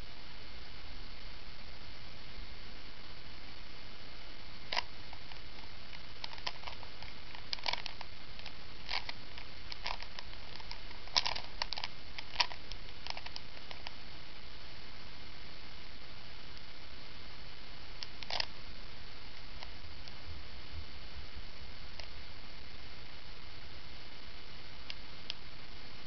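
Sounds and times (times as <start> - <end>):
steady hiss: 0.0 - 26.0
puzzle cube clacking: 4.7 - 14.0, 18.0 - 18.5.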